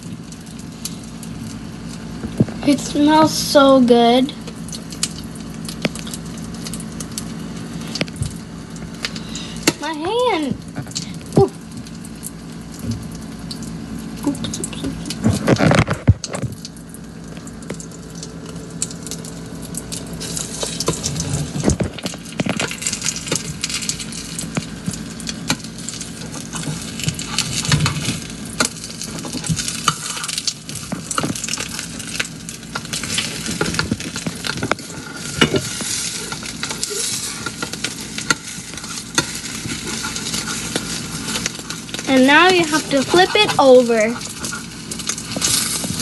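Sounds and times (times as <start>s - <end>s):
omelet sizzling in a frying pan: 0.0s - 46.0s.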